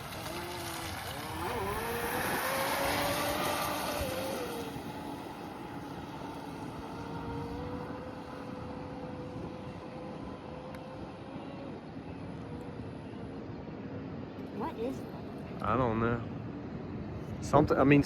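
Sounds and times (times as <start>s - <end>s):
electric motor whining: 0.0s - 11.9s
wind noise on microphone: 0.0s - 14.3s.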